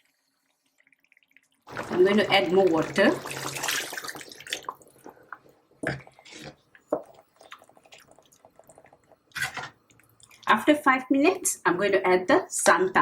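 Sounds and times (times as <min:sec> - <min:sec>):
water drips: 0:00.0 - 0:10.6
water splashing into pot: 0:00.8 - 0:06.2.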